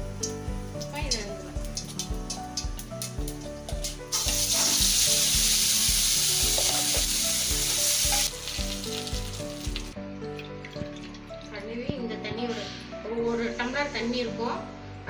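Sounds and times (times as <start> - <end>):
loud sizzling in hot oil: 0.0 - 10.0
light frying crackle: 0.0 - 12.8.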